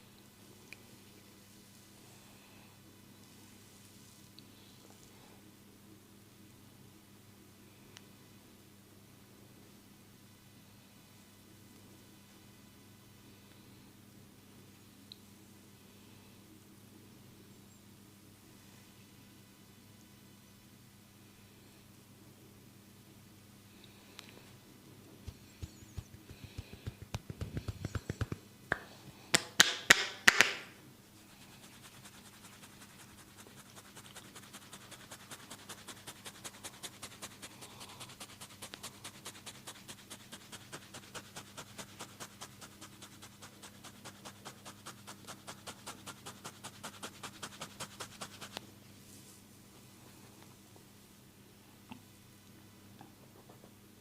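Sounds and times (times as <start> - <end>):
hands tapping on scalp: 25.2 - 30.6, 31.4 - 48.6
loud hand smacks: 26.4 - 30.7.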